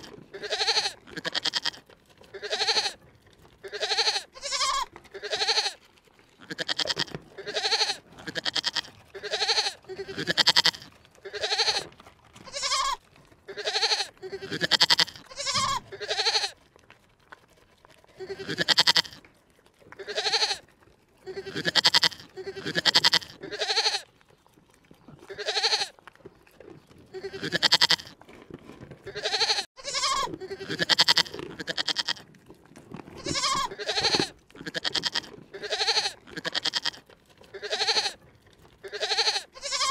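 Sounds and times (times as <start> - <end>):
animal calling: 33.2 - 38.2, 38.8 - 39.9.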